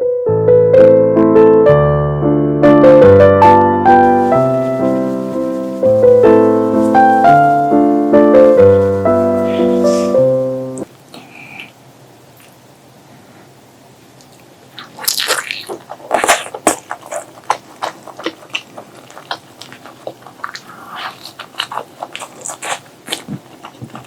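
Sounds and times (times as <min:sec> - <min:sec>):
piano melody over chords: 0:00.0 - 0:10.9.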